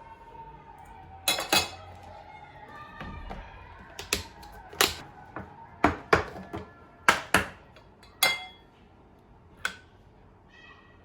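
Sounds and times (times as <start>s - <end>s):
dishes and utensils clinking: 1.2s - 2.2s, 3.8s - 8.7s.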